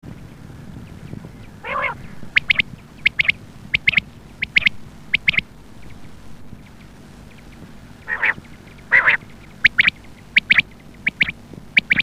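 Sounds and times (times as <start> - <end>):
quail calling: 1.4 - 12.0.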